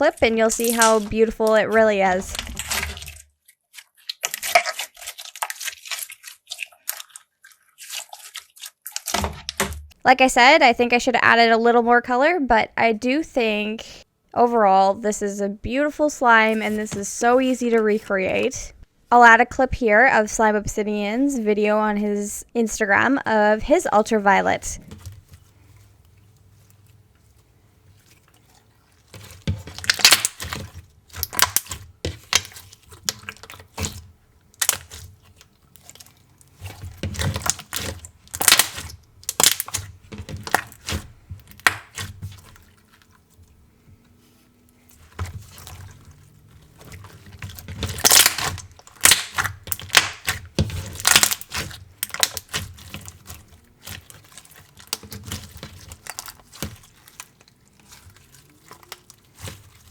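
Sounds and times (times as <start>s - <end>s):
slime squeezed with sticky pops: 29.2s - 42.5s, 46.9s - 59.9s.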